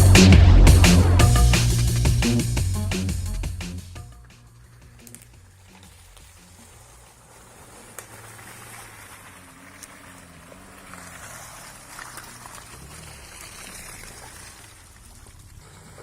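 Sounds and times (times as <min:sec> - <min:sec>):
outdoor hiss: 0:00.0 - 0:09.2
off-road vehicle engine running: 0:00.0 - 0:16.0.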